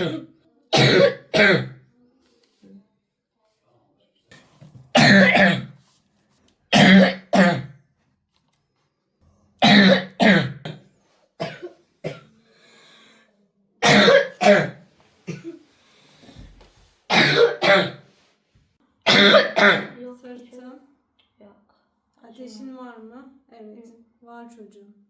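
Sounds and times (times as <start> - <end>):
boy coughing: 0.0 - 1.8, 5.0 - 5.7, 6.8 - 7.7, 9.6 - 10.8, 11.4 - 12.3, 13.8 - 15.6, 17.1 - 18.0, 19.1 - 20.0.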